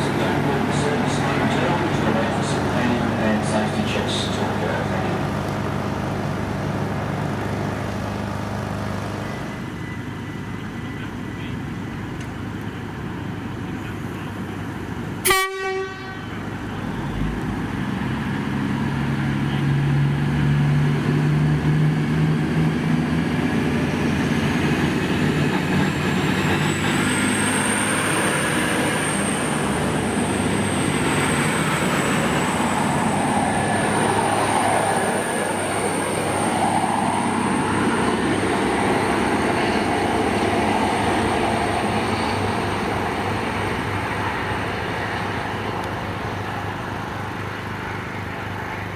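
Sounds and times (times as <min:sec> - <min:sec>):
diesel train running: 0:00.0 - 0:48.9
train horn toot: 0:15.2 - 0:16.5.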